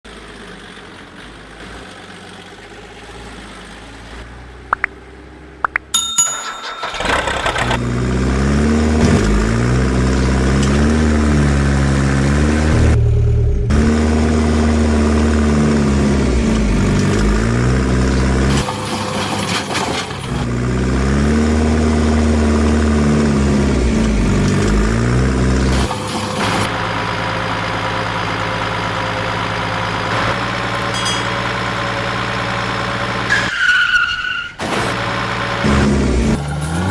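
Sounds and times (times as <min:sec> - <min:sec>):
engine starting and revving: 0:06.4 - 0:27.9, 0:34.6 - 0:36.9.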